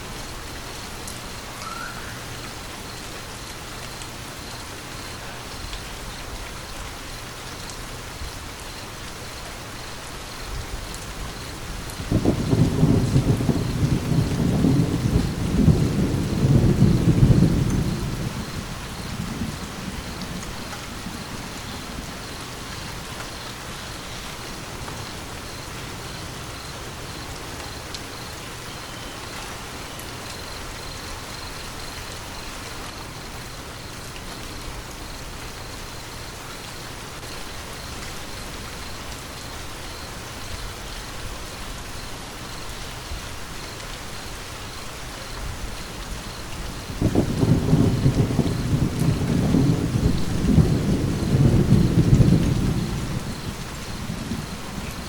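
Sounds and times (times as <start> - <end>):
steady rain falling: 0.0 - 55.0
thunder rumbling: 10.6 - 23.3, 45.4 - 55.0.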